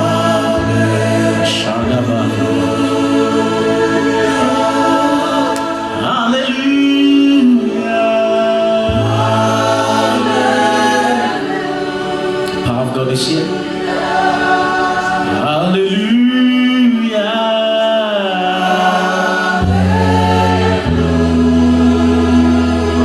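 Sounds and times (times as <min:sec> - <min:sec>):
choir singing held notes: 0:00.0 - 0:23.0
sustained low accompaniment: 0:19.6 - 0:23.0.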